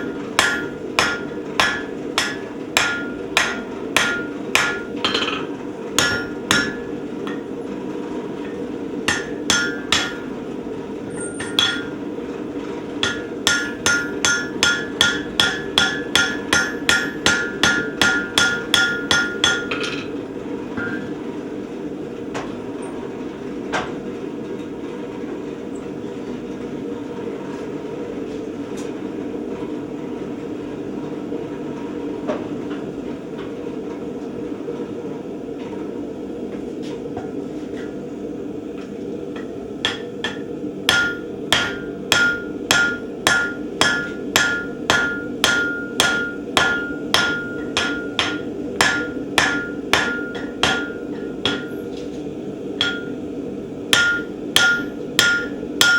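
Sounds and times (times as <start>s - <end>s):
hammer ringing on steel: 0.0s - 7.4s, 9.1s - 10.3s, 11.2s - 12.0s, 13.0s - 20.0s, 39.9s - 51.8s, 52.8s - 53.2s, 53.9s - 55.9s
steady hum: 0.0s - 32.3s, 32.9s - 55.9s.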